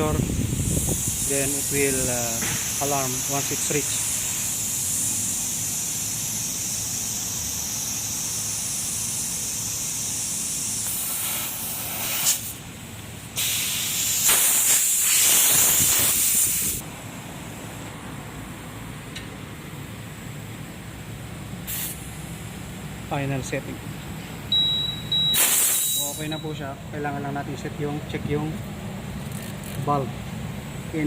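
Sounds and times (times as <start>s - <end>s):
tyre inflator air hissing: 0.1s - 16.8s, 21.6s - 22.3s, 25.4s - 26.4s.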